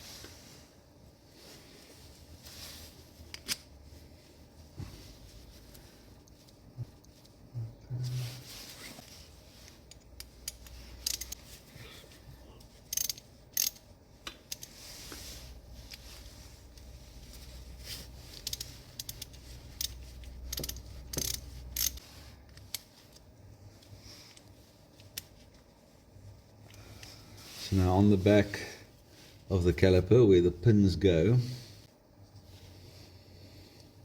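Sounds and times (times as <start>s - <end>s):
low steady hum: 0.0s - 34.0s
small metal parts clicking: 9.9s - 11.4s, 12.8s - 14.8s, 18.4s - 22.0s.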